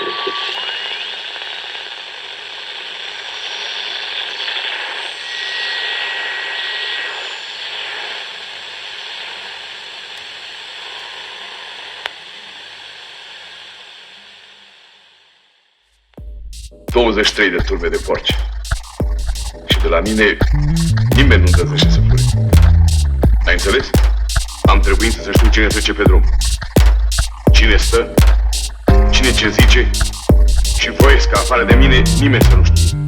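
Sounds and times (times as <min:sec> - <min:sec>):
steady rushing hiss: 0:00.1 - 0:15.6, 0:16.5 - 0:20.9, 0:21.5 - 0:33.0
faint pulsing hum: 0:19.8 - 0:25.5.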